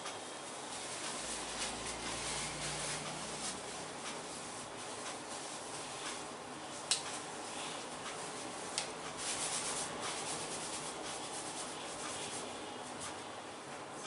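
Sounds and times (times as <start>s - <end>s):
fingers rubbing hair and scalp: 0.8s - 13.3s.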